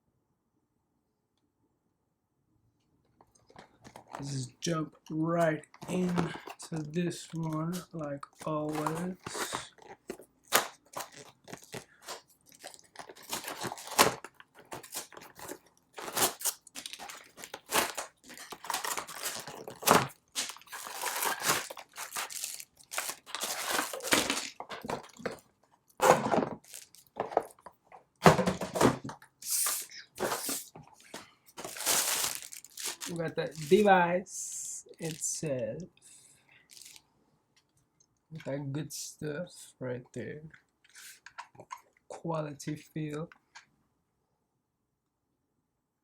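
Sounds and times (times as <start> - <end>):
packaging crinkling and tearing: 3.4 - 4.8, 5.4 - 25.4, 26.0 - 27.8, 28.7 - 33.9, 35.0 - 35.2, 36.7 - 37.0.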